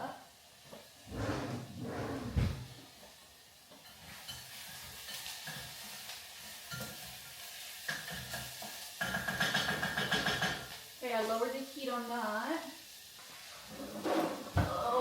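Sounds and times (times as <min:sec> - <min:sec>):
onions sizzling in a pan: 0:00.0 - 0:01.1, 0:02.6 - 0:15.0
utensil knocking against pan: 0:09.0 - 0:10.7.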